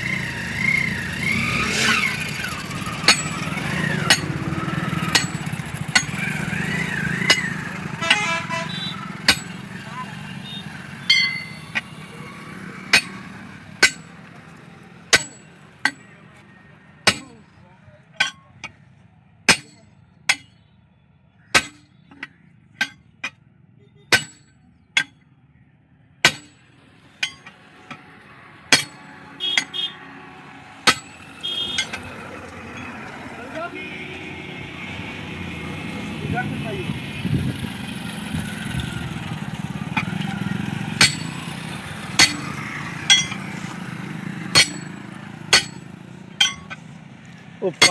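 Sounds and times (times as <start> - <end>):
hammer striking metal: 1.8 - 16.2, 17.0 - 17.5, 18.1 - 18.8, 19.5 - 20.6, 21.5 - 23.4, 24.1 - 25.2, 26.2 - 28.1, 28.7 - 30.0, 30.8 - 32.1, 39.9 - 43.7, 44.4 - 46.9.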